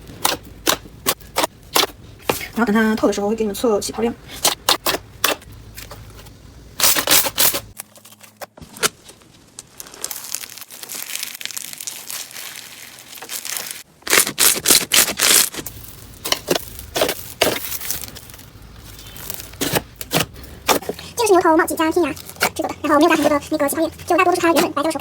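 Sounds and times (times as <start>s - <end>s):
crinkly slime stretching: 7.7s - 20.0s.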